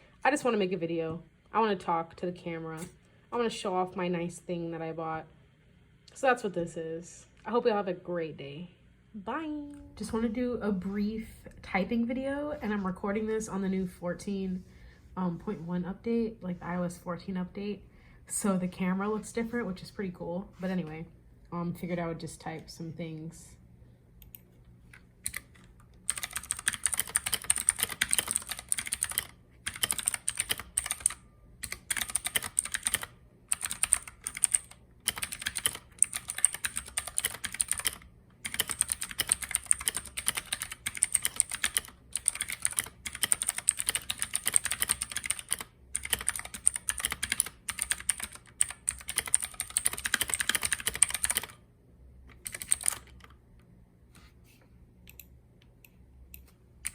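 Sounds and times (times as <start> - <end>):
mechanical keyboard typing: 24.3 - 51.6, 52.3 - 53.4.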